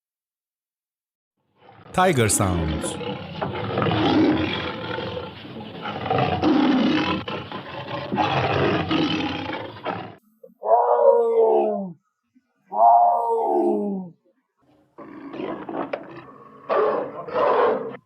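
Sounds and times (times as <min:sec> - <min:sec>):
tiger roaring: 0:02.5 - 0:12.0, 0:15.0 - 0:18.0.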